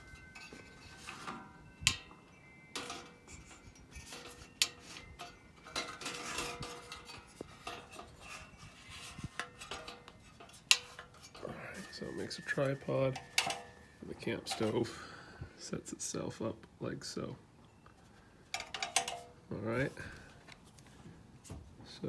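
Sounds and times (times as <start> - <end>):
metallic clicks and clatter: 0.0 - 14.8, 18.5 - 19.3.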